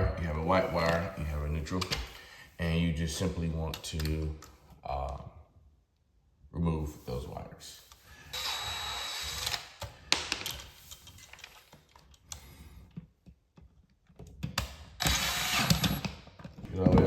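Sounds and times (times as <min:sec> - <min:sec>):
power drill running: 0:08.3 - 0:09.8, 0:15.0 - 0:16.0.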